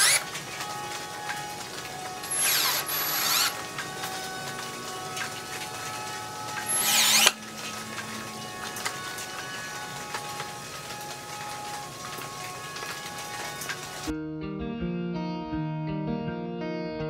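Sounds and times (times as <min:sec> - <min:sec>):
cordless drill short bursts: 0:00.0 - 0:04.4, 0:05.0 - 0:13.6
background music: 0:00.0 - 0:17.0.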